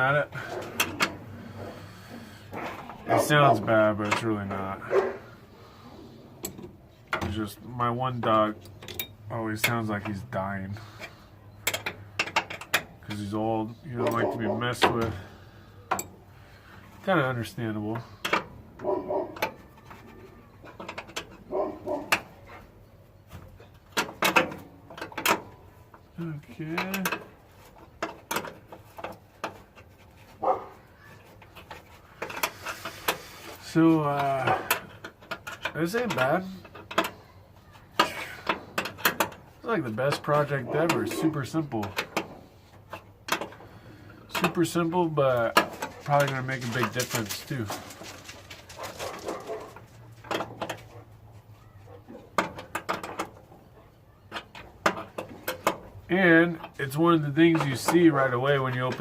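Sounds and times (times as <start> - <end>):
dog barking: 3.1 - 3.3, 4.9 - 5.2, 14.0 - 14.6, 18.8 - 19.4, 21.5 - 22.1, 30.4 - 30.7, 48.8 - 49.8
sharp clicks and knocks: 11.0 - 13.2, 17.9 - 30.5, 31.2 - 59.0.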